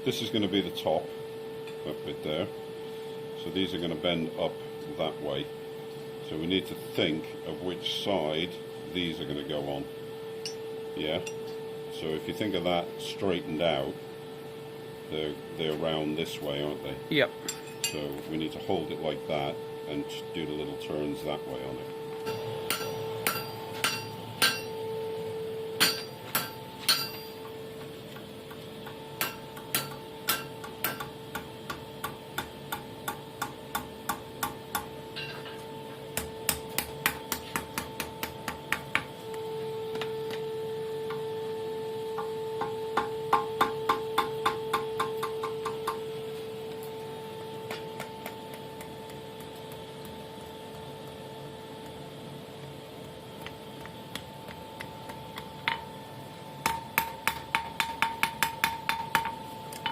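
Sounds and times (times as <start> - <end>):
steady hum: 0.0 - 59.9
hammer striking steel on anvil: 10.4 - 11.6, 17.4 - 18.2, 22.2 - 24.9, 25.8 - 27.5, 28.8 - 35.6, 42.2 - 46.1, 55.1 - 55.9, 56.6 - 59.9.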